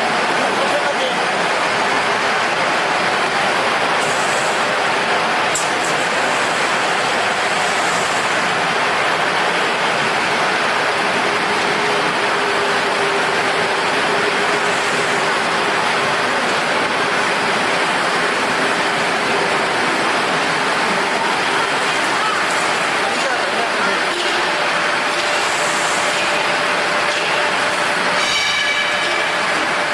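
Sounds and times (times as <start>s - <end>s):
workshop machinery hissing: 0.0s - 29.9s.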